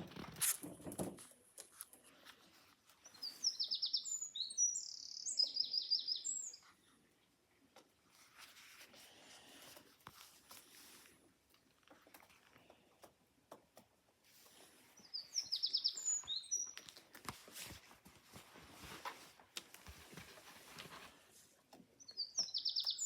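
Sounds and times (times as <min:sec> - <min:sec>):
songbird chirps and trills: 0:02.1 - 0:07.2, 0:14.3 - 0:17.9, 0:20.9 - 0:23.0.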